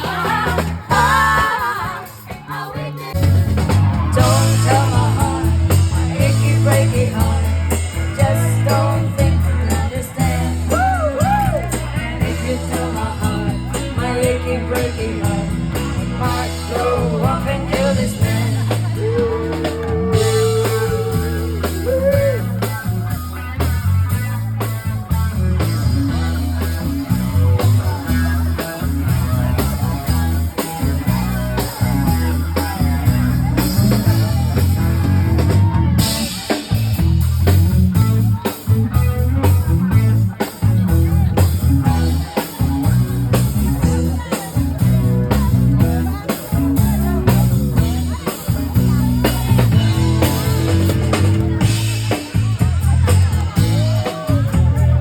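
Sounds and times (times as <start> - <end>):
person singing: 0.0 - 22.8
bass and drum beat: 0.0 - 55.0.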